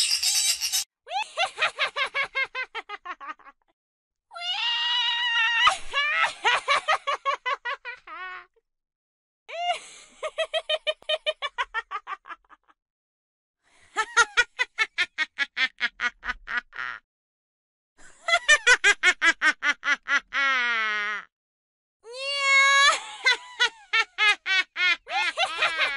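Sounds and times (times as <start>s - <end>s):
high-pitched witch cackling: 22.6s - 25.9s.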